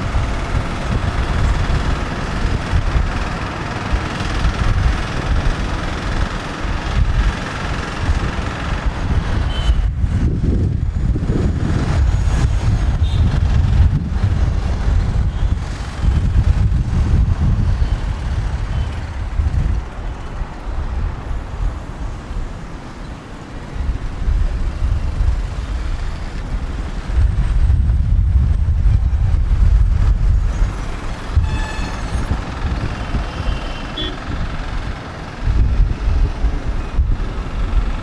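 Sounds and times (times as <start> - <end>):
heavy road traffic rumble: 0.0 - 38.0
brief pitched tone: 31.4 - 32.3.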